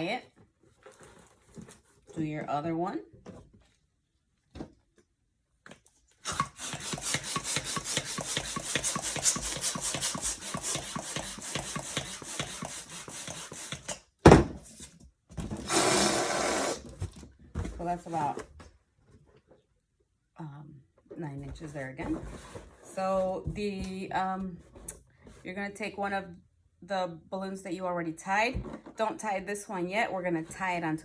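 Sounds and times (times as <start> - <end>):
electric balloon inflator: 6.2 - 14.0, 15.6 - 16.9.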